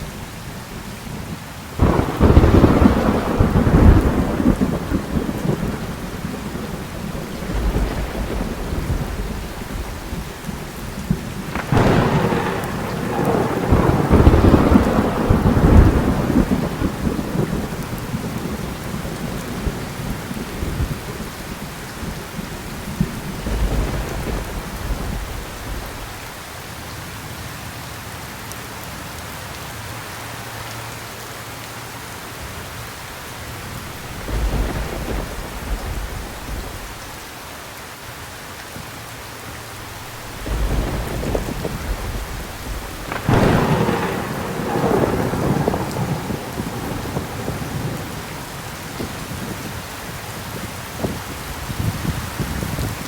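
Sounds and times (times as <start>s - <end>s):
thunder rumbling: 0.0s - 26.4s, 33.6s - 37.4s, 39.4s - 53.0s
heavy rain: 0.0s - 53.0s
sharp thunder crack: 1.8s - 26.3s, 33.8s - 37.3s, 39.7s - 49.7s.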